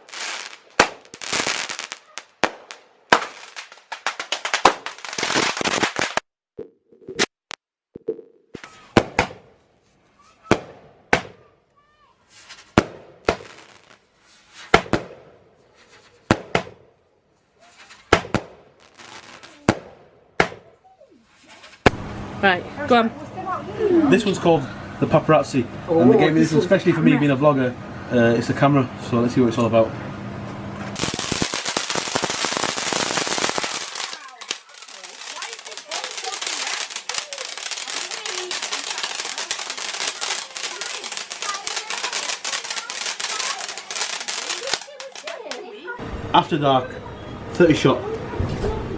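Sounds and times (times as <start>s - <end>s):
firework hissing: 0.0s - 6.2s, 12.3s - 15.0s, 17.7s - 19.8s, 31.0s - 45.6s
firework bangs: 0.0s - 6.3s, 8.5s - 9.6s, 10.4s - 11.5s, 12.4s - 17.0s, 17.8s - 20.8s, 21.6s - 22.3s, 30.9s - 45.6s.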